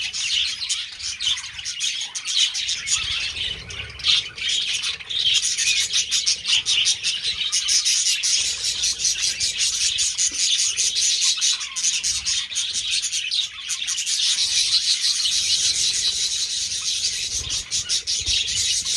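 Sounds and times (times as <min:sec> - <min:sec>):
budgies chattering and chirping: 0:00.0 - 0:18.9.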